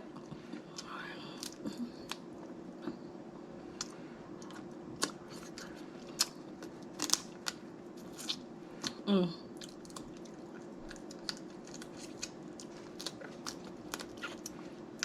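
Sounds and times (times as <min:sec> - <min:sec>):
chewing and mouth sounds: 0:03.8 - 0:09.0, 0:09.6 - 0:15.0
crab shell cracking: 0:05.0 - 0:08.4, 0:10.9 - 0:14.6.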